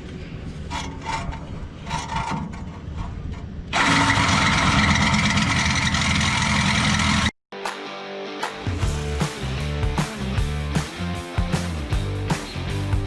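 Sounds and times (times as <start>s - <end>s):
power tool running: 3.7s - 7.4s.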